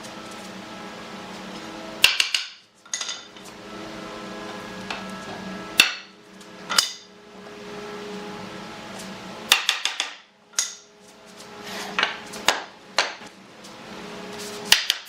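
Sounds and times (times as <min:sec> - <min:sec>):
steady low hum: 0:00.0 - 0:14.9.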